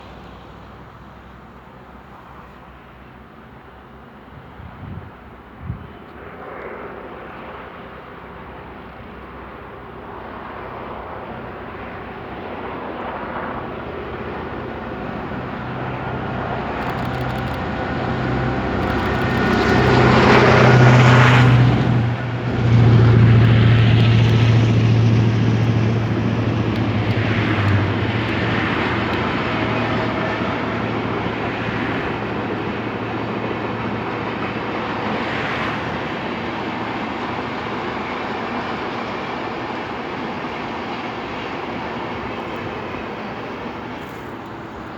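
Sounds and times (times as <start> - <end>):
diesel locomotive engine drone: 0.0 - 44.9
rumble of passing train: 0.0 - 44.9.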